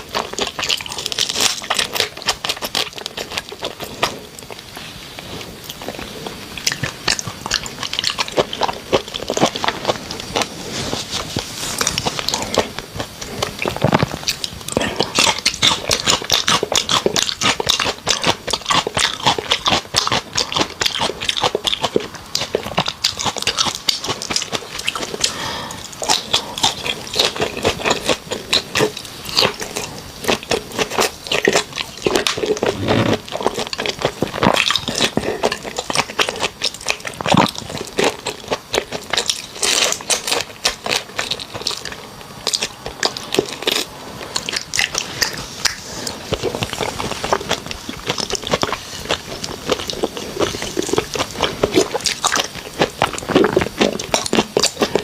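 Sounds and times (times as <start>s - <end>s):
wet chewing and biting: 0.0s - 55.0s.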